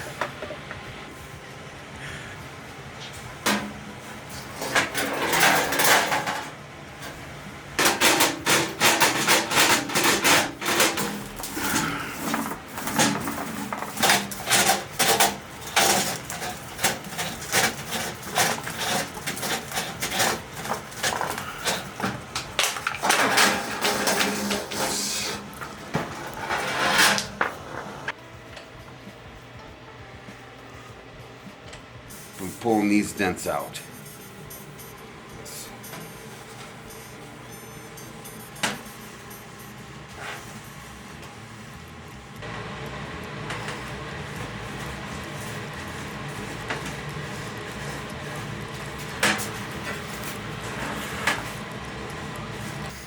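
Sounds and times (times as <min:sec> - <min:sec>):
metallic scraping: 0:03.5 - 0:07.2, 0:07.8 - 0:28.2.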